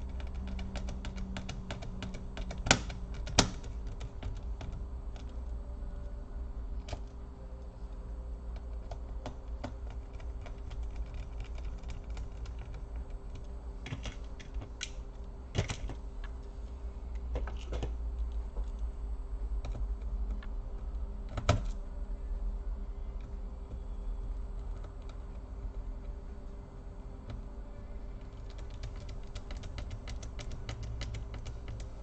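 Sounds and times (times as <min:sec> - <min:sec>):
clicks and taps of laptop parts: 0:00.1 - 0:05.3, 0:28.4 - 0:31.9.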